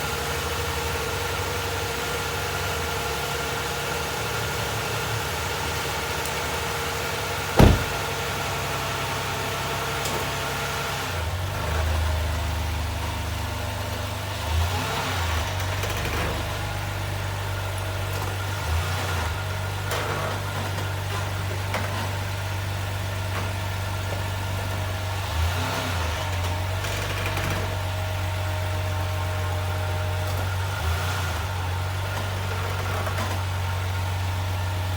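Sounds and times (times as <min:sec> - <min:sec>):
sharp knock: 0:07.6 - 0:08.1
short creaks or knocks: 0:07.6 - 0:08.1
car engine running: 0:07.6 - 0:08.3.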